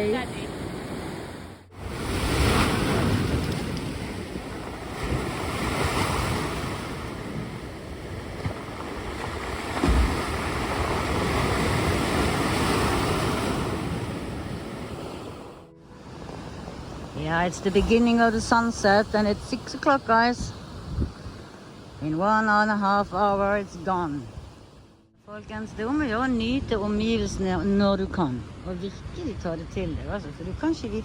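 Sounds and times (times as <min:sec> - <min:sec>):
waves breaking on beach: 0:00.0 - 0:25.0
wind buffeting microphone: 0:00.0 - 0:31.0
low thump: 0:09.8 - 0:10.5.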